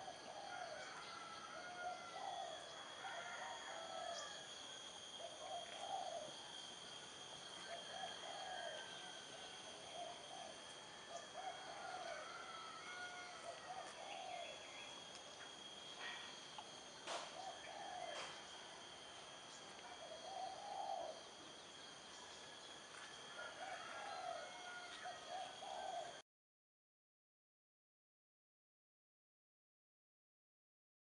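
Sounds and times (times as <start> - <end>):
insect drone: 0.0 - 26.2
bird calls: 5.2 - 6.4, 12.8 - 15.0, 17.0 - 18.5, 19.5 - 22.4.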